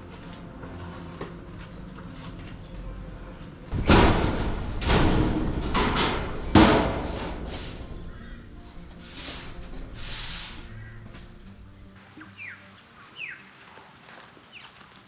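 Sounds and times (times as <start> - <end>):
construction bangs and scrapes: 0.0 - 11.9
quiet background music: 0.0 - 15.0.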